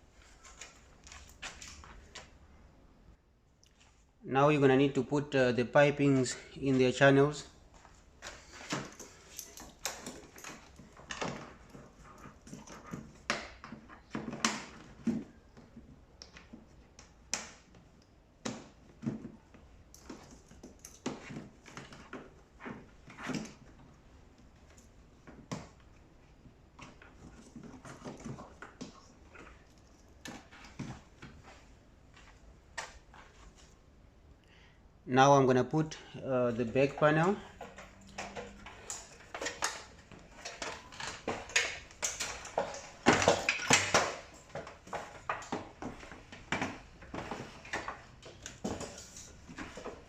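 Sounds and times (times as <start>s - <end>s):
plastic parts clicking and knocking: 37.0s - 50.0s.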